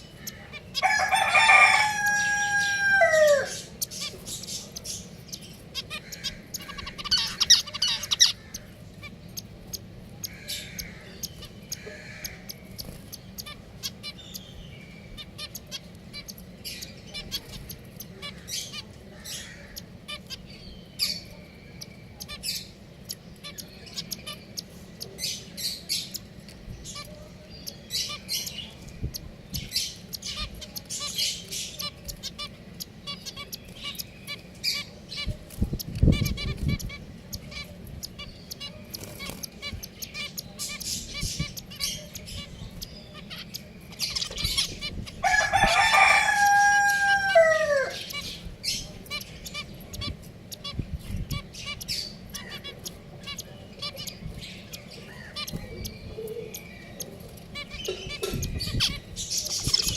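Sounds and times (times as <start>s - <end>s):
finches chirping: 0.0s - 59.9s
rooster crowing: 0.8s - 3.7s, 45.2s - 48.0s.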